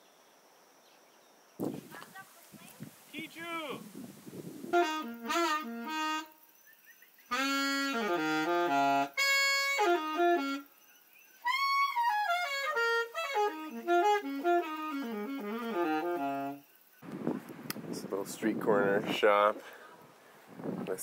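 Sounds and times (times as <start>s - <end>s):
saxophone-like melody: 4.6s - 6.4s, 7.3s - 10.7s, 11.4s - 16.6s.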